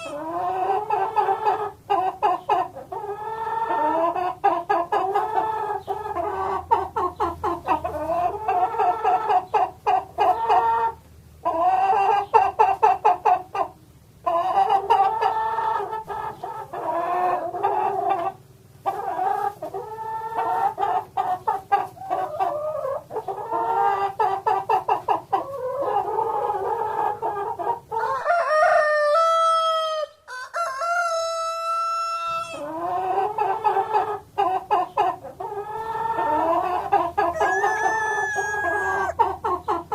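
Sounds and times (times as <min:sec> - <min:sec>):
rooster crowing: 0:00.0 - 0:00.3, 0:28.0 - 0:32.7, 0:37.3 - 0:39.2
chickens clucking: 0:00.0 - 0:39.9.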